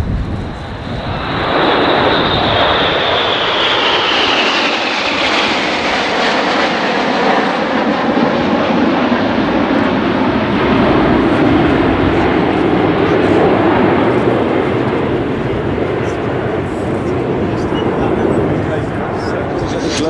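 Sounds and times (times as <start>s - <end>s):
jet engines whining and rumbling: 0.0s - 20.0s.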